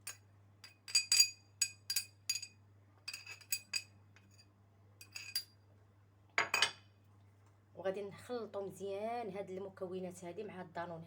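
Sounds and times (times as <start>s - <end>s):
spoon clinking against dish: 0.0s - 5.5s.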